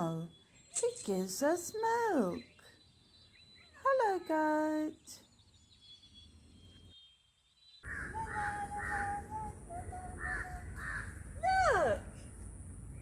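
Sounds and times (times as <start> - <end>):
pulsing animal calls: 7.9 - 12.1
low outdoor rumble: 7.9 - 13.0.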